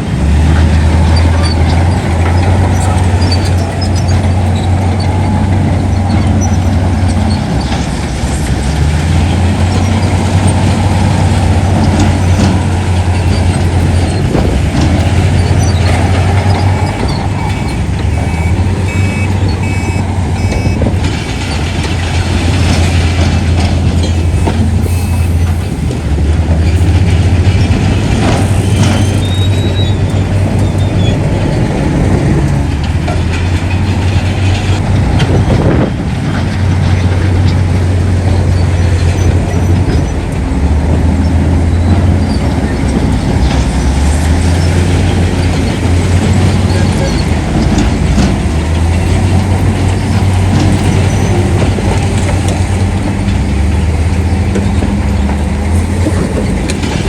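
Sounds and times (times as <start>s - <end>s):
diesel machinery engine drone: 0.0s - 57.0s
reversing alarm beeping: 16.4s - 21.0s.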